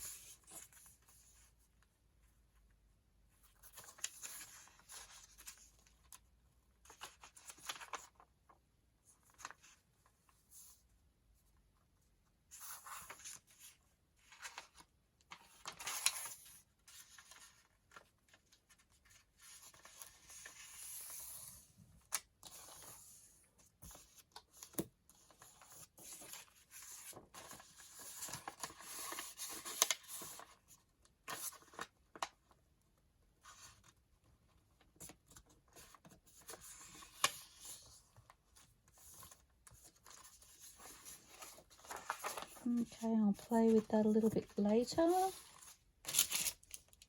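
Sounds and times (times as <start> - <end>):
paper sheets rustling: 35.3 - 46.9.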